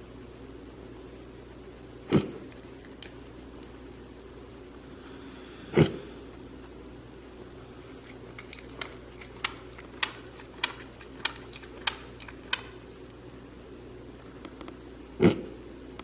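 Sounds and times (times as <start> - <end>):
pig grinding its teeth: 7.9 - 12.8.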